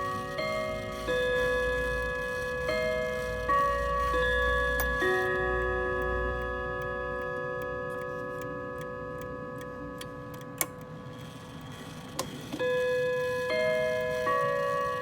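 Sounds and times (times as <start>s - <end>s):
clock chime notes: 0.0s - 10.9s, 12.6s - 15.0s
sharp clock mechanism clicks: 0.0s - 15.0s
clock ticking: 0.4s - 11.0s.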